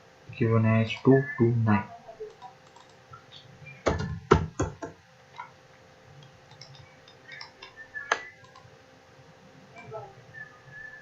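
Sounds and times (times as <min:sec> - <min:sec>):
keyboard and mouse clicks: 0:02.2 - 0:03.2, 0:06.2 - 0:08.7.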